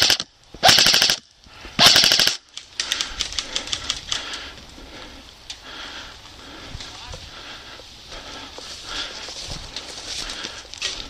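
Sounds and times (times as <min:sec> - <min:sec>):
airsoft guns firing bursts: 0:00.0 - 0:01.2, 0:01.8 - 0:02.4
distant rapid fire: 0:00.0 - 0:01.2, 0:01.8 - 0:02.4.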